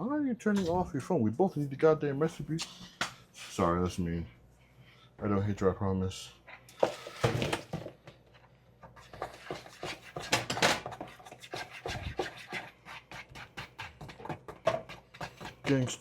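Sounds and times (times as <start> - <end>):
kitchen items clicking and scraping: 6.5 - 16.0
kitchen items clattering: 6.6 - 12.2.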